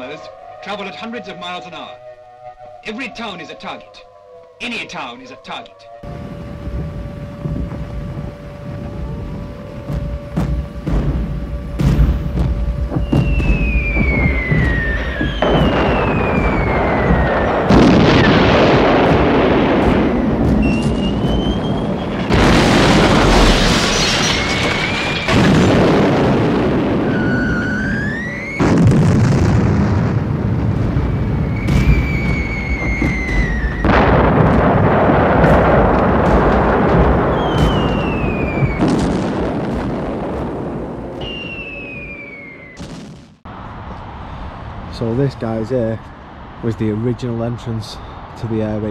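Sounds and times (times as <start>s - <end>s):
background music: 0.0s - 23.2s
falling bomb whistles: 6.0s - 43.4s
loud explosions: 6.0s - 43.5s.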